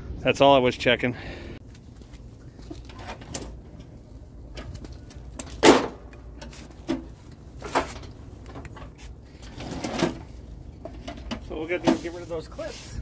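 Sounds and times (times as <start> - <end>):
knocks and clunks of parts: 4.5 - 12.0.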